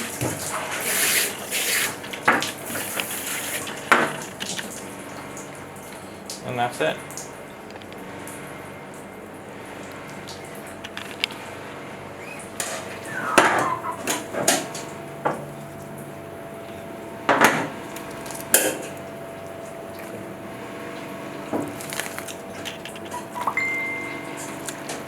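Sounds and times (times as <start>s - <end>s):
brief high tone: 13.0s - 14.2s, 23.4s - 24.4s.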